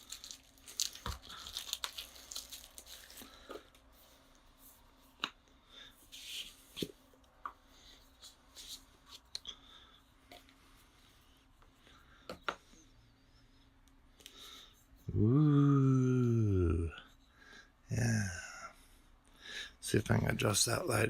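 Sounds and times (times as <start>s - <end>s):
packaging rustling and tearing: 0.0s - 3.8s.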